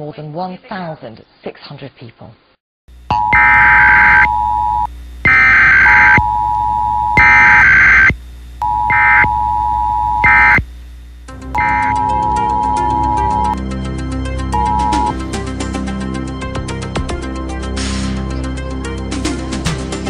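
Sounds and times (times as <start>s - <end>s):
two-tone attention signal: 3.1s - 10.6s, 11.6s - 13.6s, 14.5s - 15.2s
short buzzing data bursts: 3.1s - 13.6s, 14.6s - 15.2s
music: 11.3s - 20.0s.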